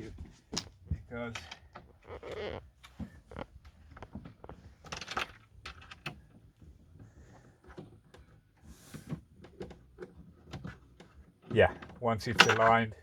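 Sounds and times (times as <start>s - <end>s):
scraping rubs: 7.0s - 11.1s.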